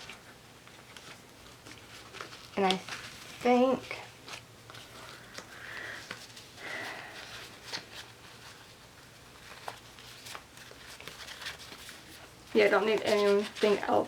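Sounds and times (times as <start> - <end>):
soft sniffs: 5.0 - 7.6.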